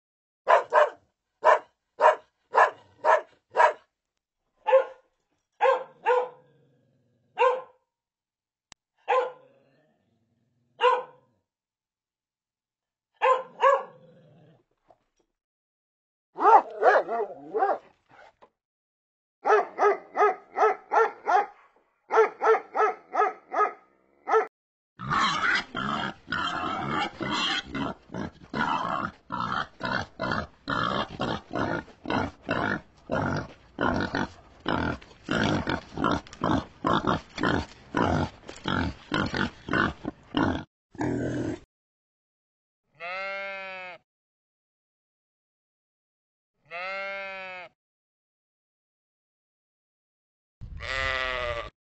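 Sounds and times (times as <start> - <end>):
dog yapping: 0.5 - 3.8, 4.7 - 5.0, 5.6 - 6.4, 7.4 - 7.7, 9.1 - 9.4, 10.8 - 11.2, 13.2 - 13.9, 16.4 - 17.8
pig grunting and oinking: 6.4 - 7.4, 9.4 - 10.7, 13.8 - 14.7, 25.0 - 41.7
animal bleat: 42.9 - 44.0, 46.6 - 47.8, 50.6 - 51.8.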